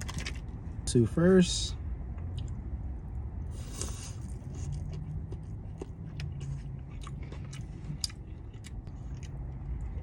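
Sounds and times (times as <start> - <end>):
low steady hum: 0.0 - 10.0
crunchy bite and chewing: 3.6 - 10.0.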